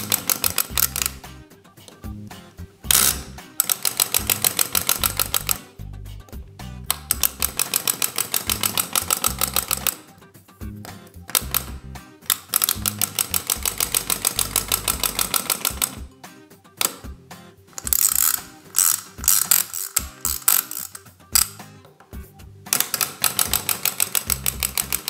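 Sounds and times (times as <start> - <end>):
clockwork toy clicking: 0.0 - 1.3, 2.9 - 5.7, 6.9 - 10.2, 10.9 - 16.1, 16.8 - 17.1, 17.8 - 21.6, 22.7 - 25.0
funk background music: 0.0 - 25.0.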